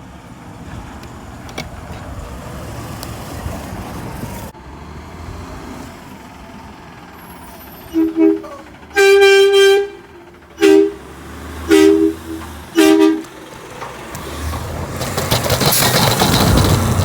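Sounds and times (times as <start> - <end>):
truck horn blasts: 7.4 - 13.4.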